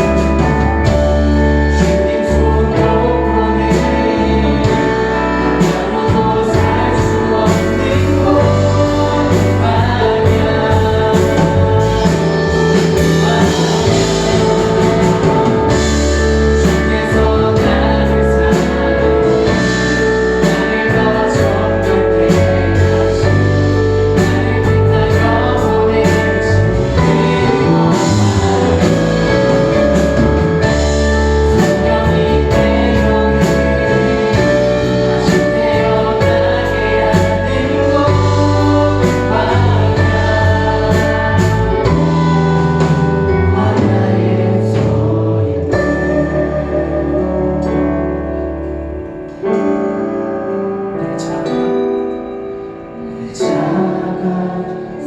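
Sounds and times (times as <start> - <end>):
steady drum beat: 0.0 - 46.2
choir singing with live band: 0.0 - 51.7, 52.6 - 55.0.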